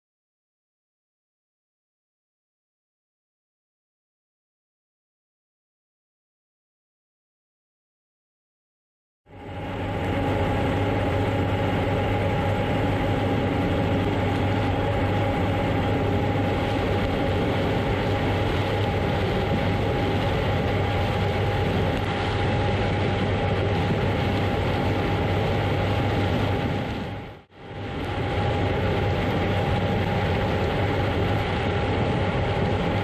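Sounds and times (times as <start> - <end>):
combine harvester engine hum: 9.3 - 33.0
high machine whine: 9.3 - 33.0.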